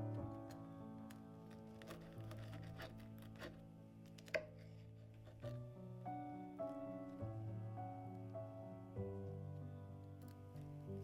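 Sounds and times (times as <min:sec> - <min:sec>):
soft instrumental music: 0:00.0 - 0:11.0.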